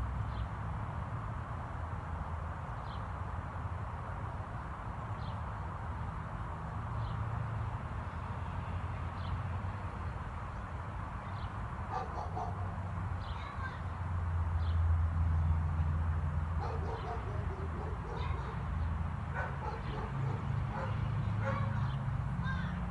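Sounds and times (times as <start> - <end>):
distant dog barking: 11.9 - 12.9, 16.6 - 18.7, 19.3 - 22.0.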